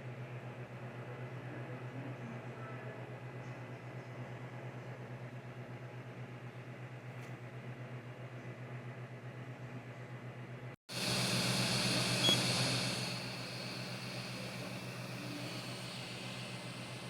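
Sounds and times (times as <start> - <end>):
high whine with hiss: 10.9 - 17.0
printer fans humming: 10.9 - 17.0.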